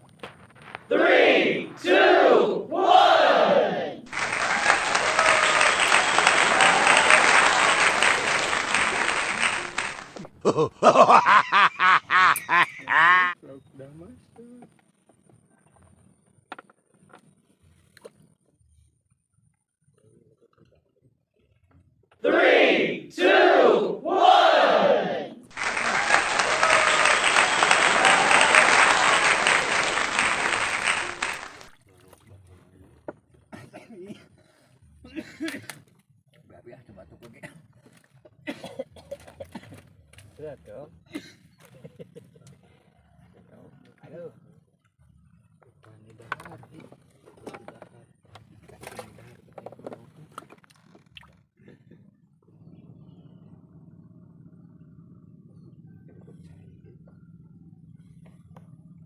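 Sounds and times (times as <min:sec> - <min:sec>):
crowd applause: 0:00.9 - 0:10.4, 0:22.6 - 0:31.8.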